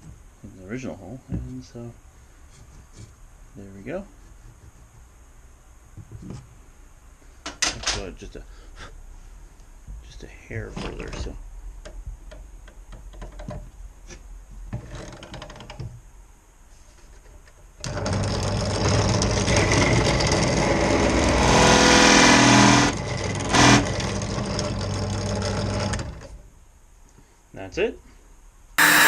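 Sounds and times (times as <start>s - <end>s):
drill boring into wood: 19.4s - 24.1s, 28.8s - 29.0s.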